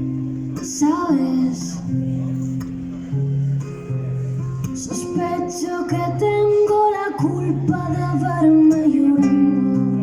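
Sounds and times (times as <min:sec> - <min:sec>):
acoustic guitar: 0:00.0 - 0:10.0
woman singing: 0:00.6 - 0:01.9, 0:04.8 - 0:10.0.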